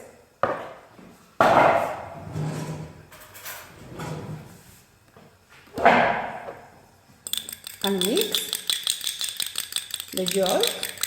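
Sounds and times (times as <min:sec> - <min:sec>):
kitchenware scraping: 0:01.7 - 0:04.7
kitchenware clatter: 0:03.1 - 0:03.8, 0:07.3 - 0:11.0.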